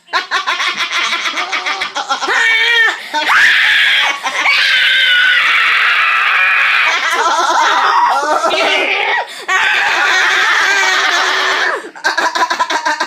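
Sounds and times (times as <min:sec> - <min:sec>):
silly yelps and squeals: 0:02.3 - 0:11.8
long high-pitched scream: 0:02.5 - 0:08.7.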